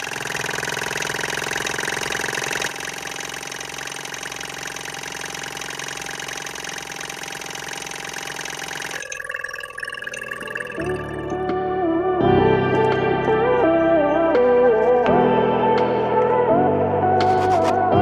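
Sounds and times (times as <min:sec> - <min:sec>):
small electric air pump buzzing: 0:00.0 - 0:09.0.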